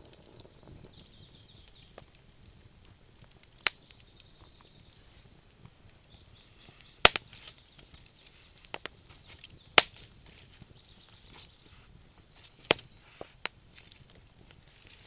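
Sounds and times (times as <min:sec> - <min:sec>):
campfire crackling: 0:00.0 - 0:15.0
faint high-pitched hiss: 0:00.0 - 0:15.0.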